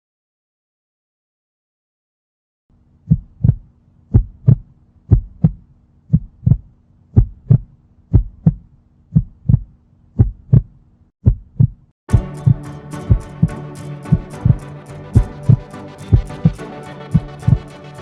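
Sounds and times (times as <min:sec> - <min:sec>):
heartbeat thumps: 0:03.1 - 0:13.5, 0:15.2 - 0:16.6, 0:17.2 - 0:17.7
music: 0:12.1 - 0:18.0.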